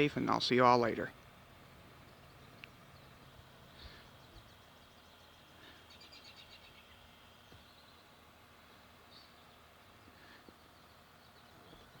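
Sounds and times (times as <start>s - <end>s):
birds chirping in high trills: 0.0s - 12.0s
outdoor background noise: 0.0s - 12.0s.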